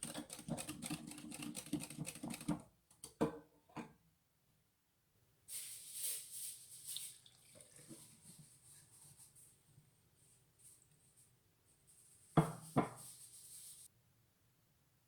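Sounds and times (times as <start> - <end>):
light hiss: 5.5 - 7.3.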